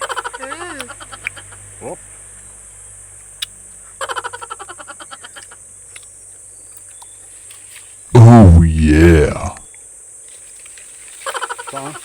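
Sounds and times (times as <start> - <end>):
high insect drone: 8.7 - 12.0.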